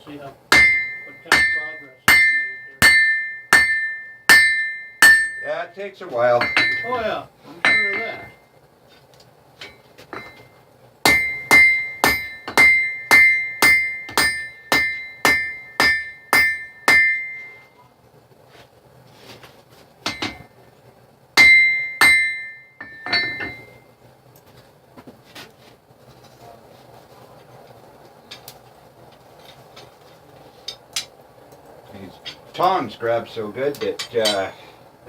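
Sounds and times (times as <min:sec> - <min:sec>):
hammer striking blade on anvil: 0:00.5 - 0:05.5, 0:06.4 - 0:08.4, 0:11.1 - 0:17.7, 0:21.4 - 0:23.8.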